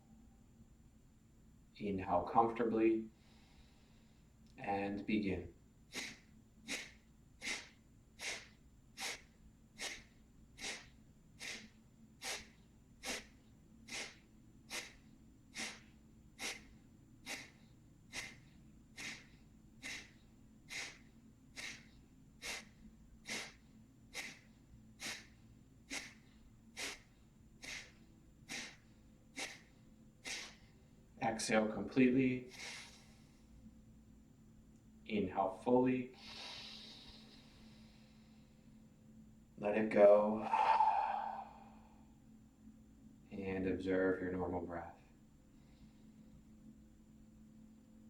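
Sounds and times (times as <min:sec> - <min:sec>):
quiet inhale: 0:03.1 - 0:04.4, 0:05.9 - 0:31.1, 0:32.4 - 0:33.8, 0:36.1 - 0:39.0, 0:40.3 - 0:42.3, 0:45.4 - 0:46.4
forceful nasal exhalations: 0:05.9 - 0:30.7, 0:32.5 - 0:33.3, 0:40.4 - 0:42.0.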